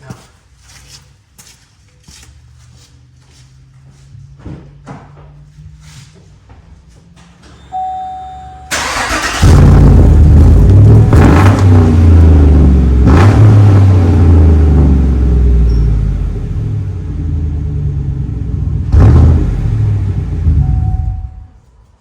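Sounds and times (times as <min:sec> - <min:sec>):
short chime: 0:07.7 - 0:08.8, 0:20.6 - 0:21.6
truck engine starting and revving: 0:08.6 - 0:21.4.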